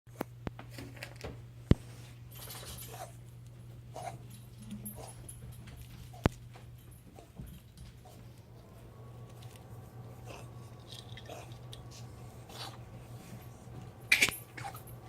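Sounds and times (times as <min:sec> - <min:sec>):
low hum: 0:04.2 - 0:15.0
dog coughing: 0:10.2 - 0:12.9, 0:14.1 - 0:14.9.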